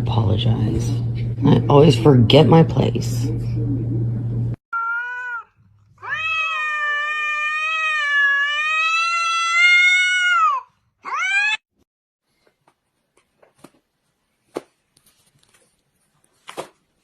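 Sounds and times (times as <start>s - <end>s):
cat yowling: 4.7s - 11.6s
cat meowing: 4.8s - 11.6s.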